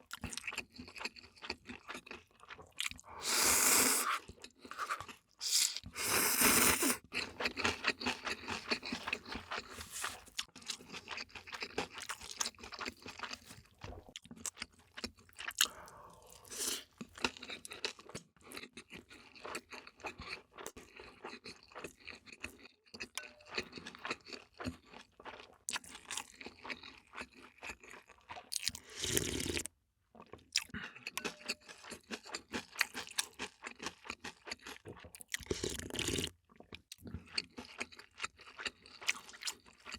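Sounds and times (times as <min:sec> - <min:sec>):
crunchy bites and wet chewing: 0:04.0 - 0:15.8.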